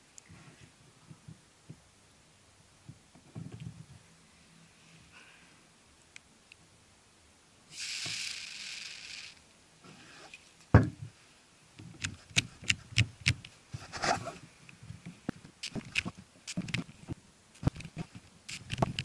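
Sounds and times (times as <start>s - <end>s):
handling clicks and knocks: 15.3s - 19.0s.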